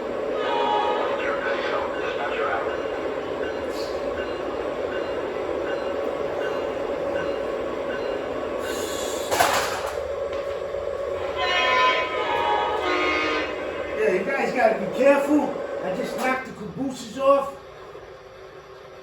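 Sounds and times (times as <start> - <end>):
model train horn: 0.4 - 1.8, 11.2 - 14.0.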